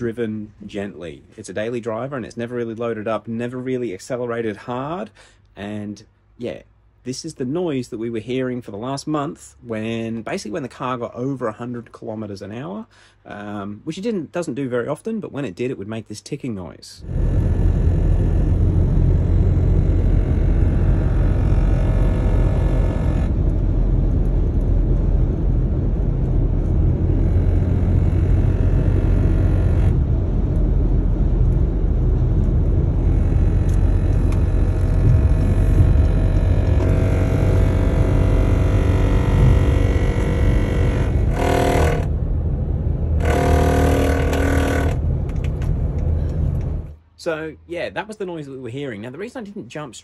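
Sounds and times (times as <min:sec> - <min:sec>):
short tonal sound: 0:17.0 - 0:30.6, 0:31.3 - 0:47.0
road rumble: 0:17.0 - 0:47.0.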